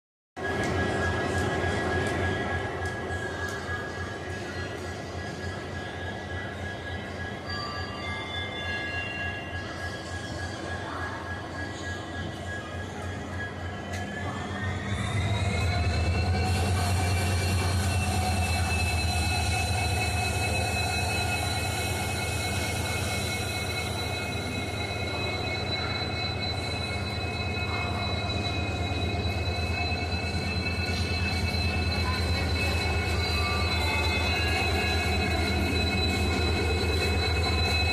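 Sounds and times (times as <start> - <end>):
diesel locomotive engine running: 11.9 - 37.9.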